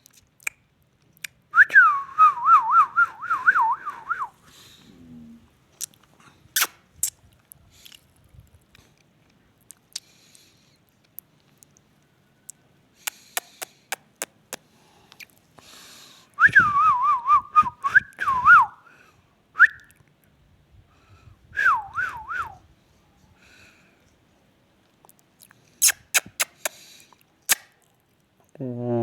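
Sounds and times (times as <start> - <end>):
warbling whistles: 1.6 - 4.4, 21.6 - 22.6.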